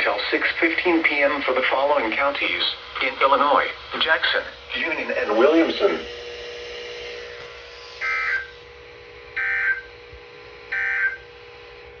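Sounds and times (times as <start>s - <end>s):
faint steady hum: 0.0s - 12.0s
digital data tone bursts: 8.0s - 8.6s, 9.4s - 10.0s, 10.7s - 11.3s.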